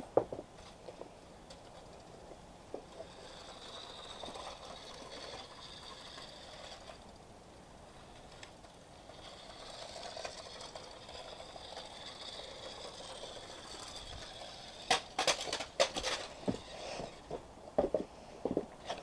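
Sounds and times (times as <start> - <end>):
toy electric motor whining: 2.9 - 7.1, 8.1 - 17.3.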